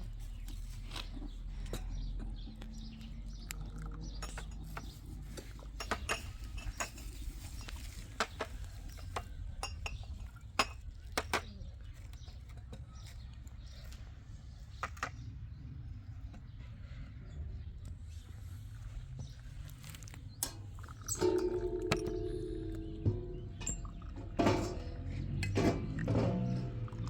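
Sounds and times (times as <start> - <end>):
kitchen utensils and dishes clinking: 20.4 - 27.0
steady low rumble: 21.0 - 27.0.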